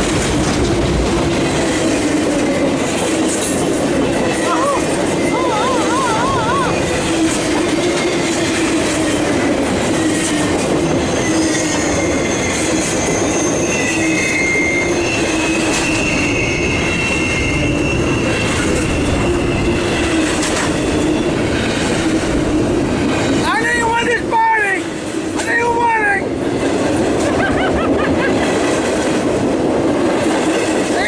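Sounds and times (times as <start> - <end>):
freight train cars rumbling on rails: 0.0 - 31.0
train wheels squealing: 4.2 - 22.2.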